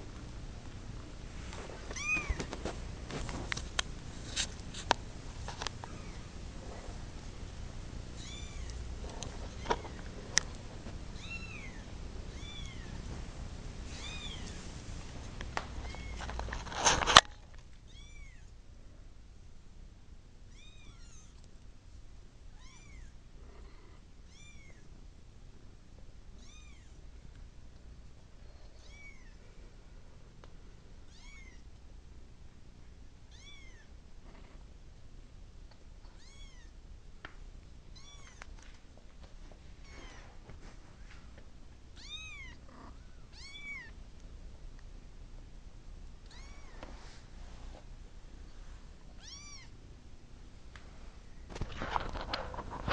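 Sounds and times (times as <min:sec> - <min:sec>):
kitten meowing: 0:02.0 - 0:02.4, 0:08.2 - 0:08.8, 0:11.2 - 0:12.9, 0:22.6 - 0:23.1, 0:31.1 - 0:31.6, 0:33.3 - 0:33.9, 0:36.2 - 0:36.7, 0:38.0 - 0:38.4, 0:42.0 - 0:44.0, 0:46.2 - 0:46.8, 0:49.2 - 0:49.7.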